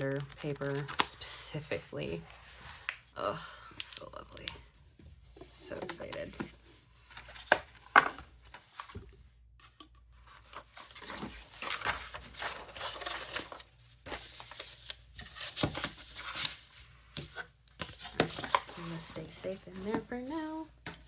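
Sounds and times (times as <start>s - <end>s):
packaging rustling and crinkling: 10.2s - 21.0s.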